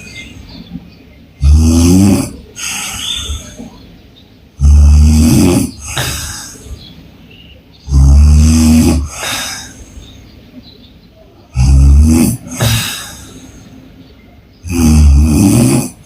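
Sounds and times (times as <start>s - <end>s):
woman snoring: 4.6s - 6.4s, 7.9s - 9.8s, 11.6s - 13.2s, 14.6s - 16.0s
breathy puff of air: 5.9s - 6.8s, 12.6s - 13.8s.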